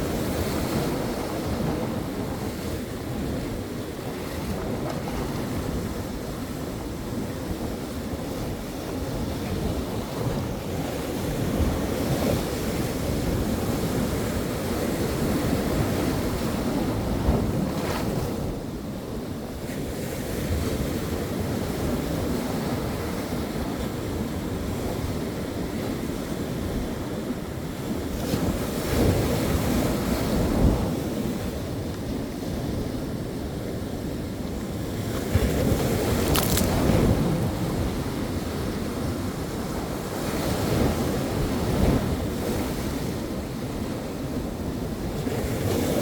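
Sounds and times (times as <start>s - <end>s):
wind buffeting microphone: 20.5s - 46.0s
ocean waves breaking: 28.4s - 46.0s.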